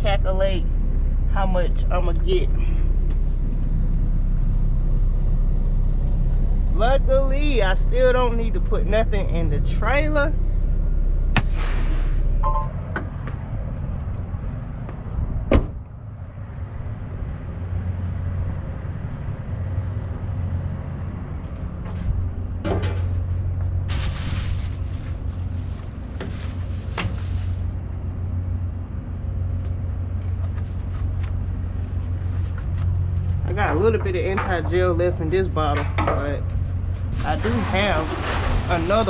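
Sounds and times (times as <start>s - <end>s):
truck diesel engine idling: 0.0s - 14.7s.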